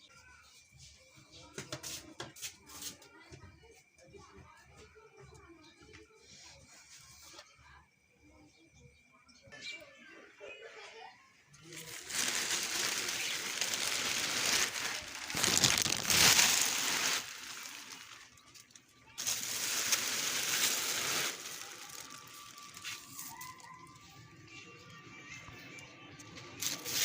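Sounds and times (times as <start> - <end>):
rustling crinkling handling noise: 11.6 - 23.7, 26.6 - 27.0.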